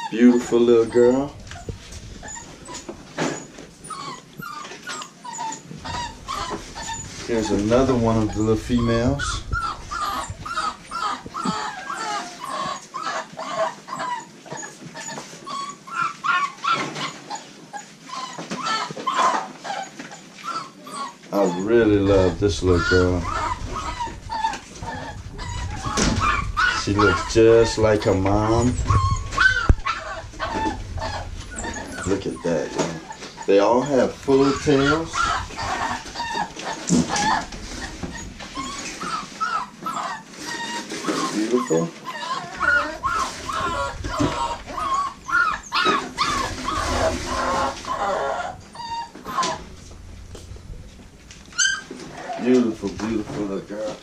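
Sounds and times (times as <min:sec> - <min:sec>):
puppies whimpering: 0:00.0 - 0:54.0.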